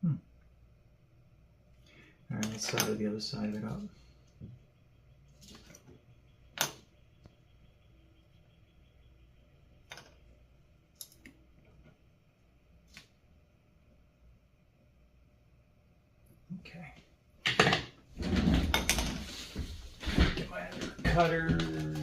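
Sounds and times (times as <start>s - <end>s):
low steady hum: 0.0s - 22.0s
small tools clicking on circuit board: 11.0s - 11.4s.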